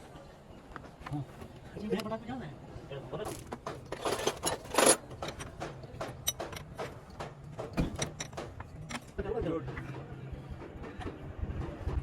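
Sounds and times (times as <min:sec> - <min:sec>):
metallic clicks and clunks: 0:03.3 - 0:10.1
metallic rattle: 0:03.9 - 0:09.1.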